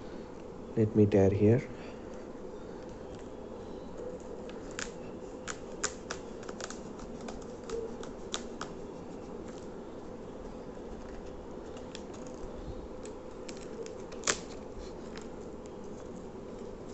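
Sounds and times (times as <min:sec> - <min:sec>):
packaging tearing crackles: 0:04.0 - 0:09.8, 0:10.5 - 0:16.9.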